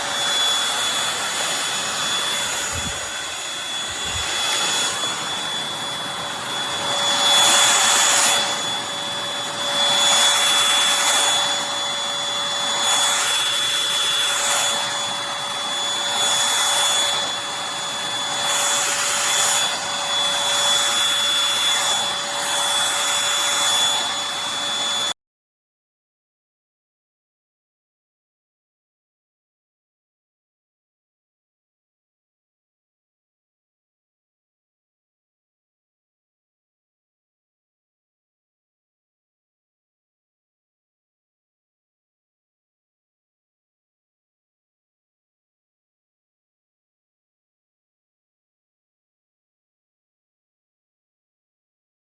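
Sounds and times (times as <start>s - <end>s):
rushing airflow: 0.0s - 9.9s
vacuum motor whine: 0.0s - 25.2s.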